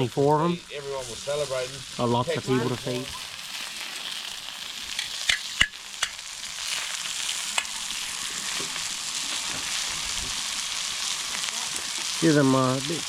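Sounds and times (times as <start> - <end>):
sausages sizzling: 0.0 - 13.0.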